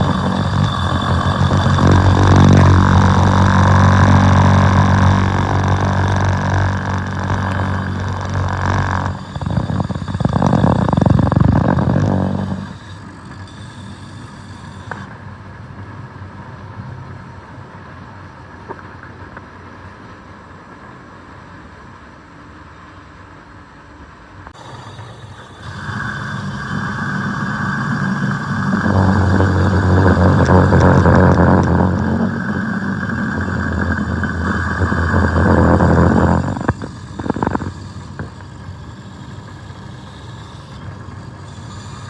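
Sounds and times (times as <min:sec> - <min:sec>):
machinery humming: 0:00.0 - 0:15.1, 0:24.6 - 0:42.0.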